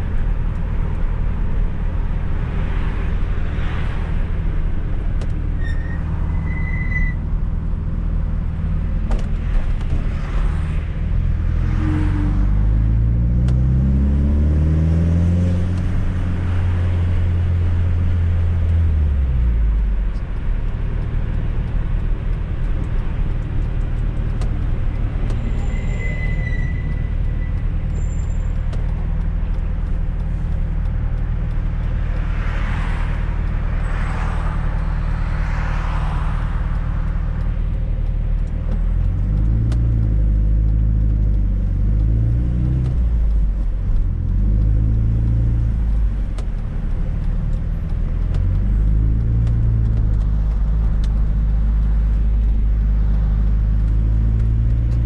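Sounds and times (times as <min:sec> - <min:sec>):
car engine accelerating: 0:07.2 - 0:55.0.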